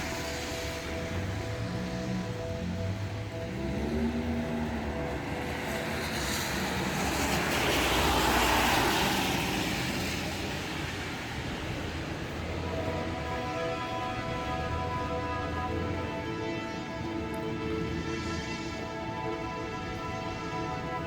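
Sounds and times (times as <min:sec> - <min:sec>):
vehicle passing by: 0:00.0 - 0:19.6.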